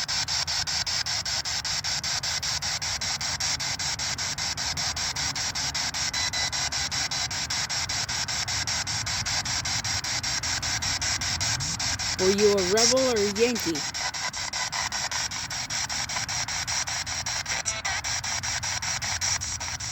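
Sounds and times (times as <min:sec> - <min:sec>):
pulsing static hiss: 0:11.4 - 0:14.2.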